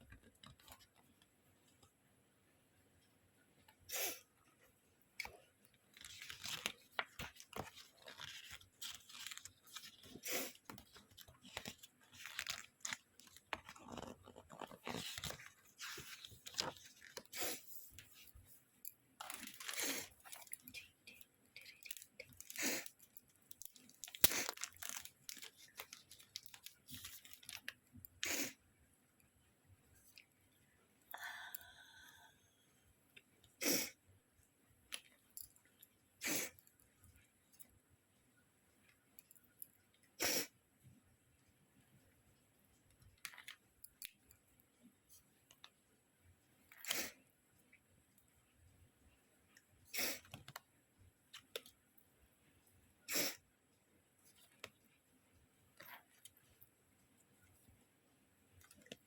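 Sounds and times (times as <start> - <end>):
packaging crinkling and rustling: 5.9 - 18.3, 19.2 - 20.7, 21.6 - 27.8
packaging tearing: 6.0 - 17.2, 23.6 - 27.7.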